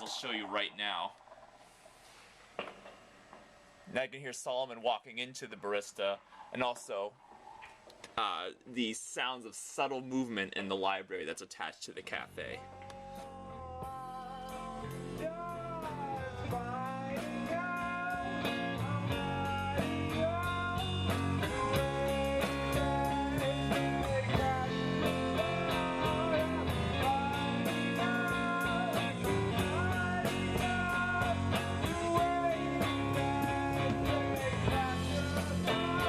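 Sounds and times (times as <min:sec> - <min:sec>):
rock music with guitar and drums: 0:13.0 - 0:36.0.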